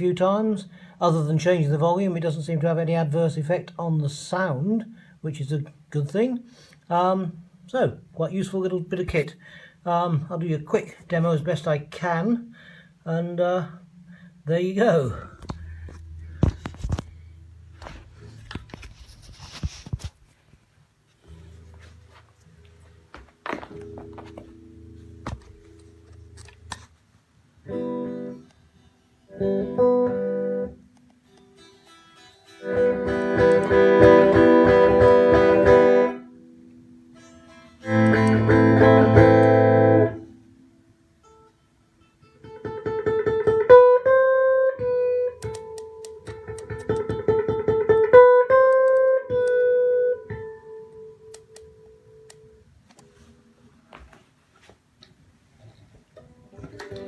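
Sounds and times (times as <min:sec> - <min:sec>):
electric guitar single-note melody: 0:15.4 - 0:18.8, 0:27.6 - 0:40.6, 0:42.2 - 0:52.6
electric guitar strummed chords: 0:15.4 - 0:18.8, 0:29.3 - 0:30.9, 0:32.6 - 0:36.6, 0:37.5 - 0:40.4.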